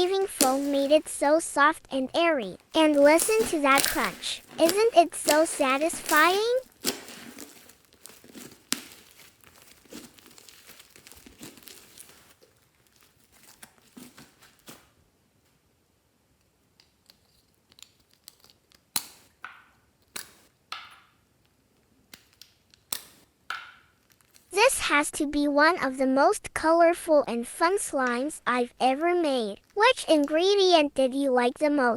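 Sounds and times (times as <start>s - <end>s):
sticky slime pops and squelches: 0.0s - 1.3s, 2.8s - 12.2s
slime crackling and crunching: 0.0s - 14.9s.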